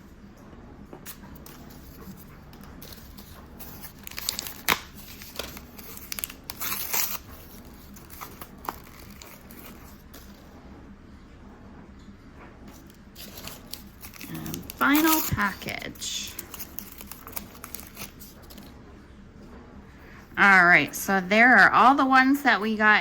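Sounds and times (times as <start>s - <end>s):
packaging tearing and crinkling: 1.1s - 10.4s, 12.8s - 18.7s.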